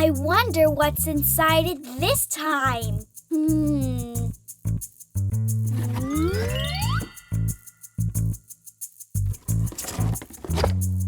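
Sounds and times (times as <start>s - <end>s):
cartoon background music: 0.0s - 4.3s, 5.7s - 7.8s
rising sliding tone: 5.7s - 7.7s.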